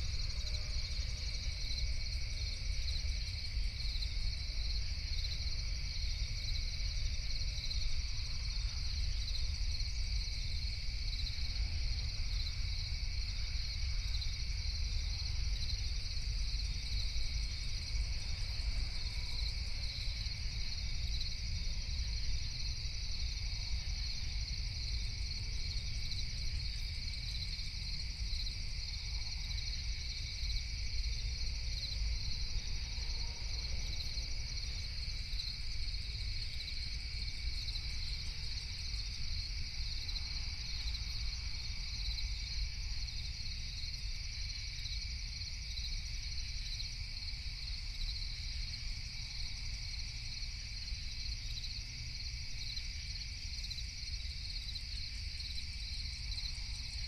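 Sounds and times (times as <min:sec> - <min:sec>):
crickets trilling: 0:00.0 - 0:57.0.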